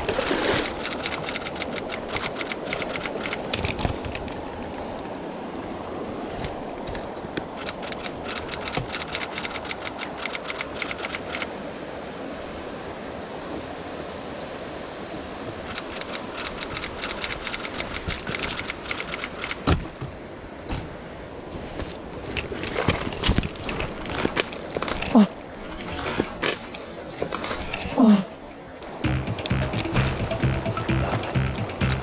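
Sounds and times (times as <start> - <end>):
camera shutter clicking: 0.0 - 3.4, 7.6 - 11.5, 15.7 - 19.6.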